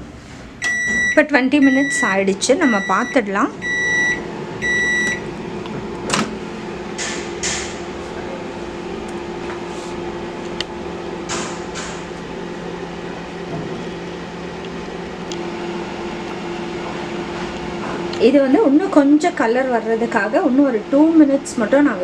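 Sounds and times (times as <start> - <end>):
microwave oven humming: 0.0 - 22.0
rustling or scraping: 9.4 - 10.0.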